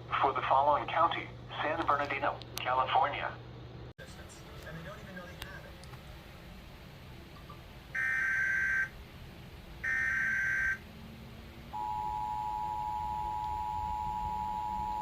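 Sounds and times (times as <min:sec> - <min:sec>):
two-tone attention signal: 0:09.8 - 0:10.8, 0:11.7 - 0:15.0.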